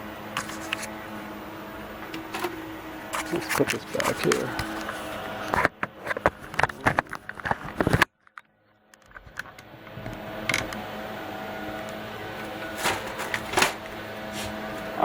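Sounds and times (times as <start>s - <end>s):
parts clattering being handled: 2.0s - 8.4s, 12.4s - 14.6s.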